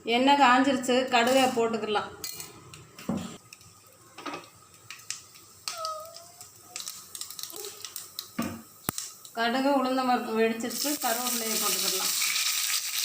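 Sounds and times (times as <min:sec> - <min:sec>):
seeds spluttering in hot oil: 0:03.4 - 0:09.7, 0:10.6 - 0:13.0.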